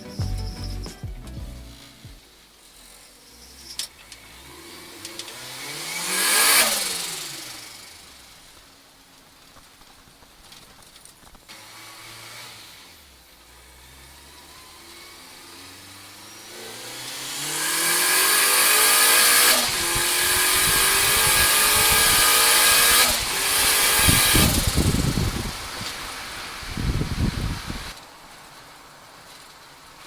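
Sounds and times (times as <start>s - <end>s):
turbo rushing hiss: 0.0s - 9.5s, 11.7s - 28.0s
pickup engine accelerating hard: 2.6s - 9.0s, 11.5s - 27.9s.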